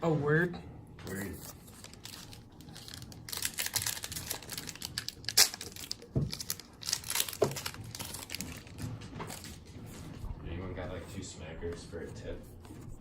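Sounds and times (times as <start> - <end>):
plastic wrapper crinkling: 1.1 - 9.7.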